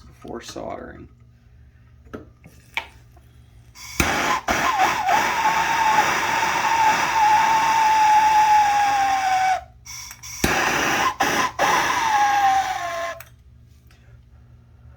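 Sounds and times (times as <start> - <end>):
gas torch hissing and whistling: 3.8 - 13.3
gas torch lighting click: 10.0 - 10.7.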